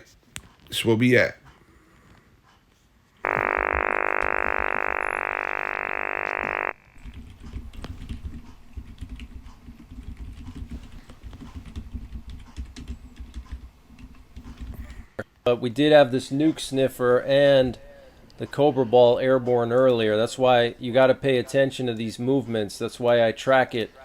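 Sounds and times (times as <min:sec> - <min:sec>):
loud buzzing tone: 0:03.2 - 0:07.1.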